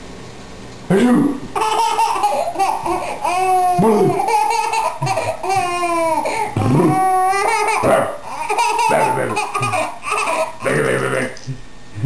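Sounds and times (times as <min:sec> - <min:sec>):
baby laughing: 0:01.6 - 0:11.0.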